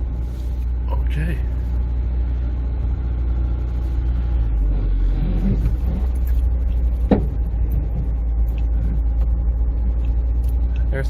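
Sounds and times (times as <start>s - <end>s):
car engine running: 0.0s - 11.0s
car body creaking and popping: 4.7s - 10.9s.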